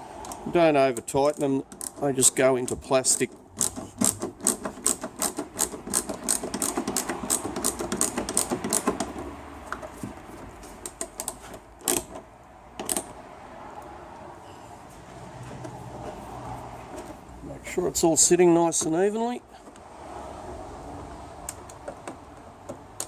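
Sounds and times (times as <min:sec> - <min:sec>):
ratchet clicking: 0:03.6 - 0:09.1.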